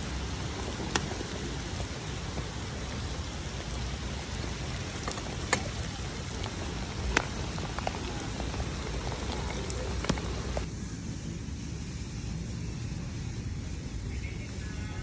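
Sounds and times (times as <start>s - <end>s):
raindrop ticks: 0.0s - 10.7s
light rain falling: 0.0s - 15.0s.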